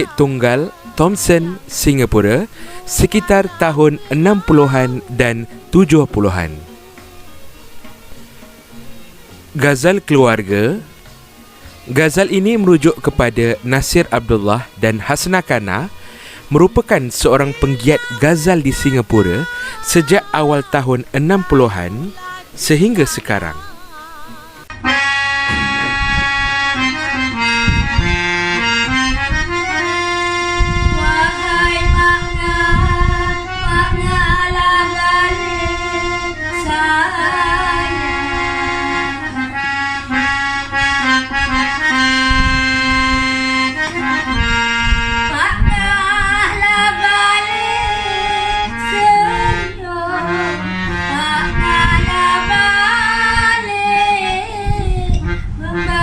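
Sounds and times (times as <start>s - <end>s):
reed instrument melody: 0.0s - 56.0s
hand drum beat: 25.5s - 26.5s.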